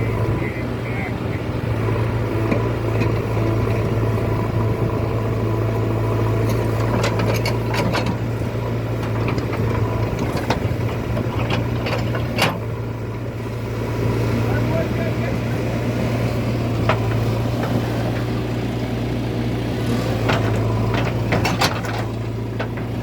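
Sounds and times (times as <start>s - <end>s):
excavator diesel engine running: 0.0s - 23.0s
sharp metallic clicks and knocks: 6.4s - 8.3s, 20.2s - 23.0s.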